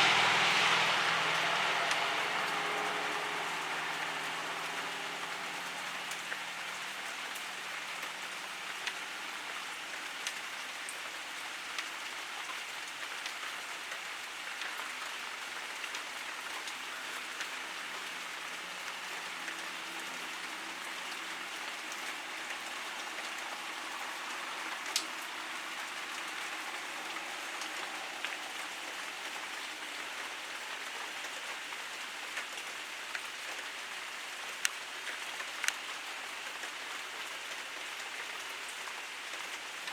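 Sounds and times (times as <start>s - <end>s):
pouring rain: 0.0s - 39.9s.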